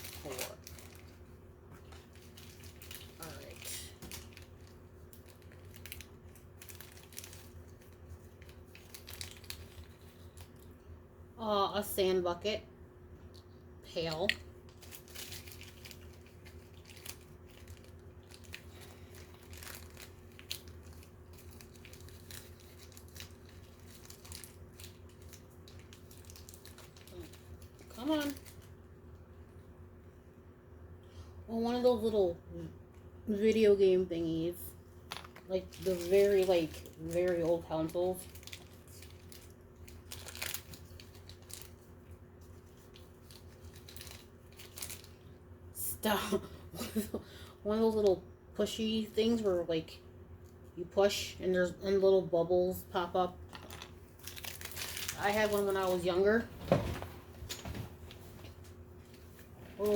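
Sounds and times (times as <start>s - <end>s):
plastic packaging crinkling: 0.0s - 10.8s, 14.5s - 28.8s, 34.9s - 45.4s, 53.5s - 56.4s
faint low hum: 0.0s - 59.9s.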